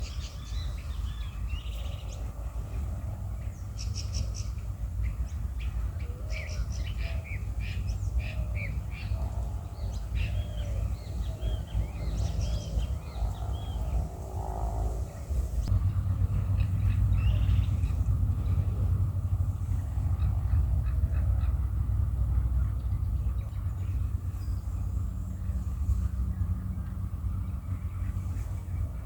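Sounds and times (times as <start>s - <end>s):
small birds chirping: 0.0s - 15.7s, 16.5s - 21.8s
steady low rumble: 0.0s - 29.0s.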